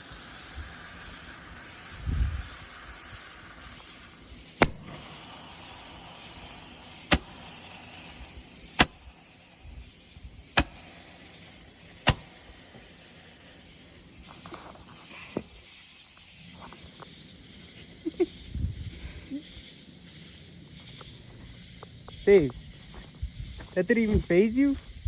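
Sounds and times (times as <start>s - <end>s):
roman candle pops: 4.6s - 9.1s, 10.5s - 12.9s.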